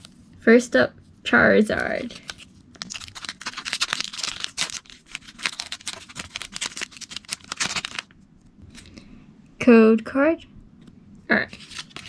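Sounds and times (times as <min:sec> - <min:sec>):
foil wrapper tearing and crinkling: 0:01.8 - 0:08.2, 0:11.6 - 0:12.0.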